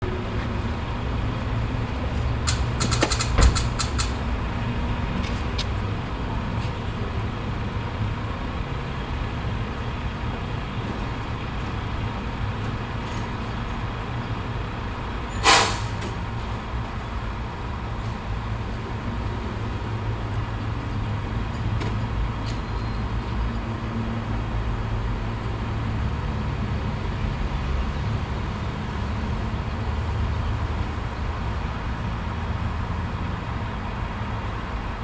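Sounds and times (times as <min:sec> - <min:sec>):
idling vehicle engines: 0:00.0 - 0:35.0
clicks and knock: 0:02.4 - 0:04.3
truck air brake hiss: 0:15.3 - 0:16.2.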